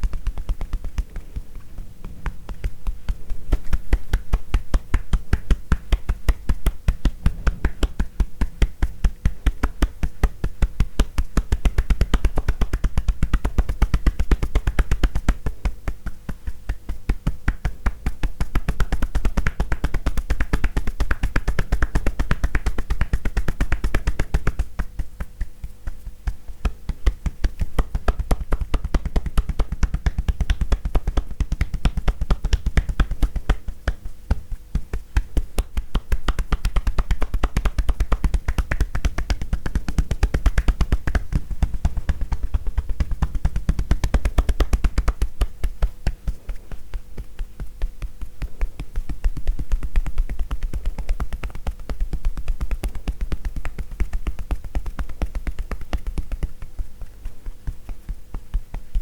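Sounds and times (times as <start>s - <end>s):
hands tapping a body: 0.0s - 59.0s.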